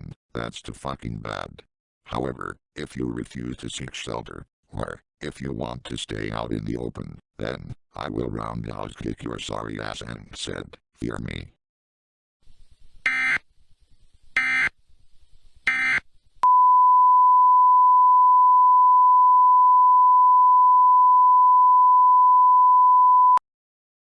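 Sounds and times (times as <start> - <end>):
loud steady tone: 13.1 - 13.4, 14.4 - 14.8, 15.7 - 23.4.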